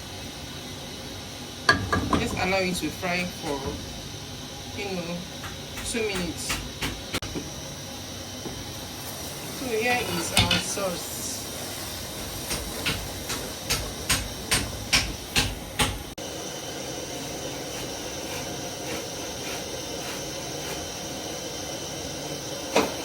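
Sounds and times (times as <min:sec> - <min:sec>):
sauce sizzling in oil: 0:07.4 - 0:15.3, 0:16.1 - 0:23.0.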